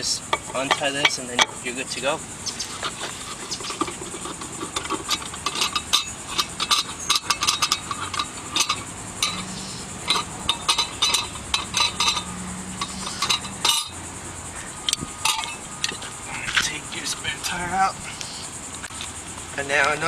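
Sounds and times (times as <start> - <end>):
metallic clicks and rattles: 2.7 - 14.0, 14.8 - 16.8.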